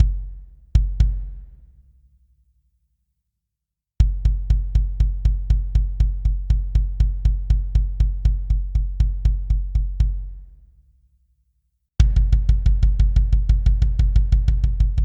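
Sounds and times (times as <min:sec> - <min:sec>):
kick drum hits: 0:00.0 - 0:01.6, 0:12.0 - 0:15.0.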